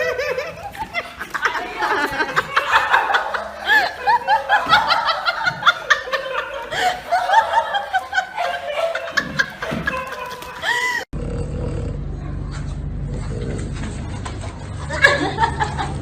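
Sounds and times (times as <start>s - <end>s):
person laughing hard: 0.0s - 11.1s
steady low hum: 11.1s - 16.0s.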